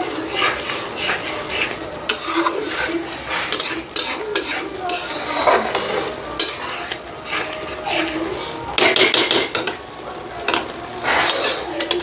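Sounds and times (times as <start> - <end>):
spoon scraping cooking pan: 0.0 - 12.0
spoon knocking against pan: 8.8 - 9.8.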